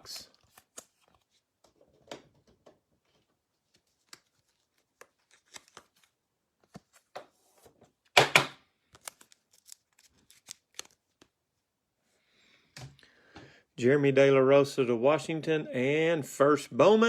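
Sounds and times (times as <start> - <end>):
trading cards clicking and sliding: 3.7 - 7.1, 8.9 - 11.3.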